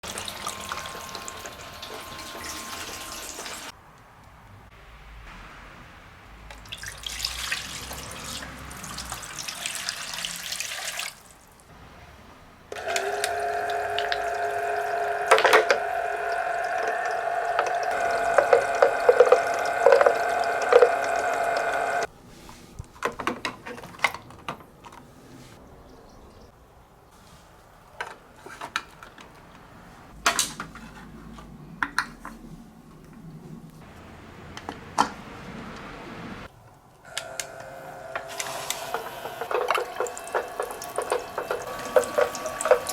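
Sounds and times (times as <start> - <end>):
electric pump hum: 0.0 - 3.7, 12.7 - 22.1, 37.1 - 42.9
water pouring and running: 0.0 - 3.8, 6.5 - 11.7, 12.8 - 22.1, 38.3 - 42.9.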